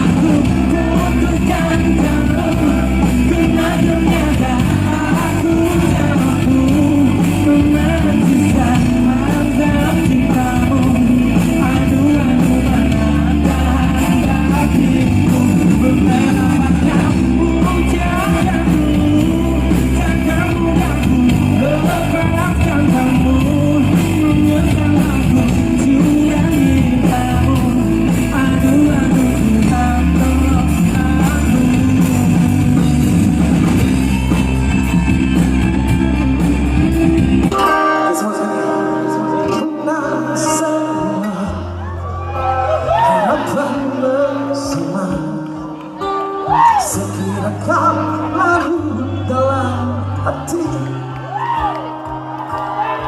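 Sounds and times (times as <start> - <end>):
drum kit: 0.0 - 41.4
electric guitar: 0.0 - 53.0
person singing: 0.0 - 53.0.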